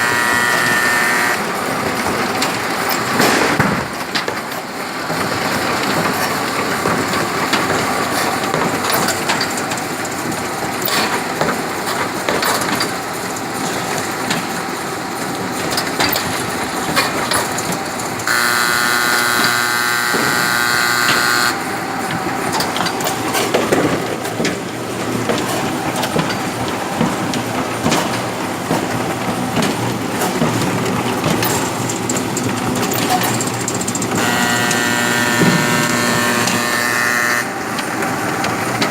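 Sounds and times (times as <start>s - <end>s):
pitched machine whine: 0.0s - 2.5s, 18.2s - 22.8s, 33.5s - 38.9s
machine clattering: 0.0s - 38.9s.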